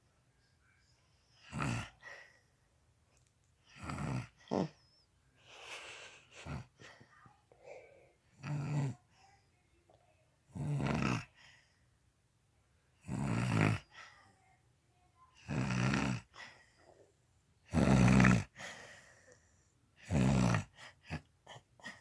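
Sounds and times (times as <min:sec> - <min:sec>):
woman snoring loudly: 0:01.4 - 0:01.9, 0:03.7 - 0:04.7, 0:08.4 - 0:09.0, 0:10.5 - 0:11.3, 0:13.0 - 0:13.9, 0:15.4 - 0:16.4, 0:17.7 - 0:18.6, 0:20.0 - 0:21.2.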